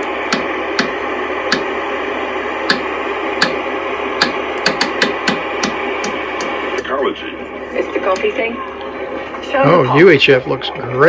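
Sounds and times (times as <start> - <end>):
tuner switch clicks: 0.0 - 1.7, 2.7 - 3.6, 4.2 - 6.9
television static hiss: 0.0 - 11.0.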